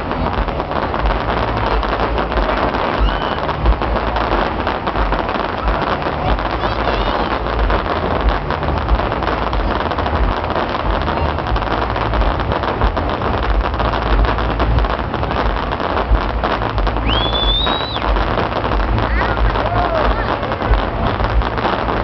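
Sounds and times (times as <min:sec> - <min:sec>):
fireworks crackling: 0:00.0 - 0:22.0
low rumble: 0:00.0 - 0:22.0
high whistle: 0:02.9 - 0:03.5, 0:17.0 - 0:18.2.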